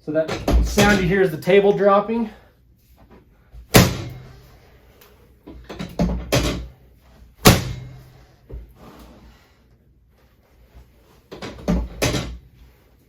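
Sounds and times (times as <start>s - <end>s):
table section slamming down: 7.4s - 8.0s.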